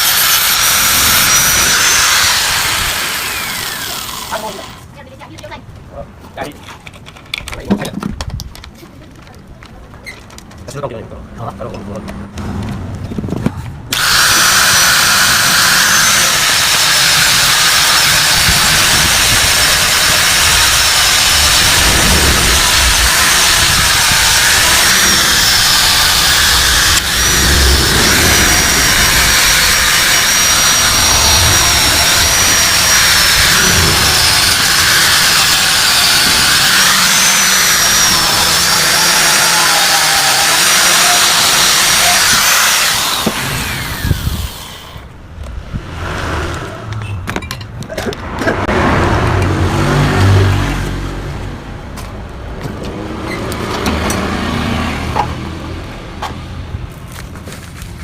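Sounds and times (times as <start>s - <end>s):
angle grinder on metal: 0.0s - 4.9s, 13.9s - 45.1s.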